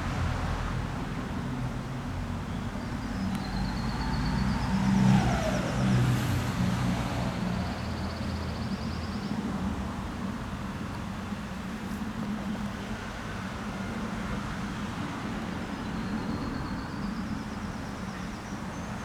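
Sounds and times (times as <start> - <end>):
road vehicle passing by: 0.0 - 10.1.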